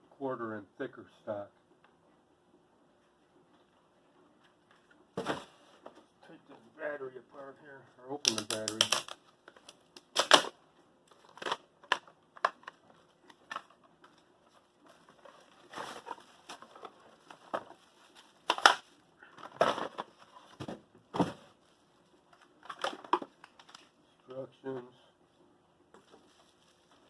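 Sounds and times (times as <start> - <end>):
packaging crinkling and rustling: 8.2 - 20.6, 21.5 - 24.0, 26.0 - 27.0.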